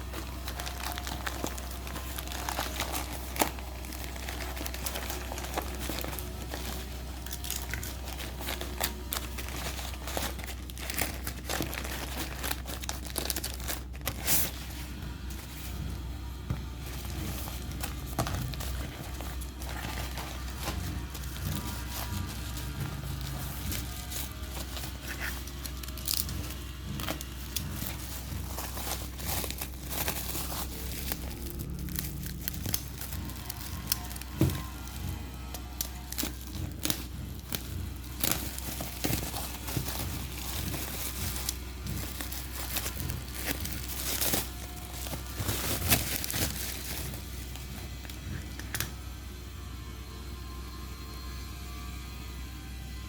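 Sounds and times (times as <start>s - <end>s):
packaging crinkling and tearing: 0.0s - 49.1s.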